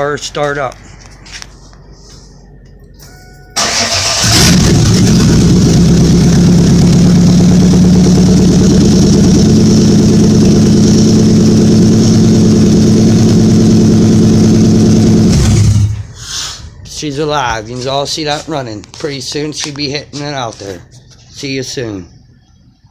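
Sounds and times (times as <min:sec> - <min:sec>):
car engine running: 0:03.6 - 0:16.2.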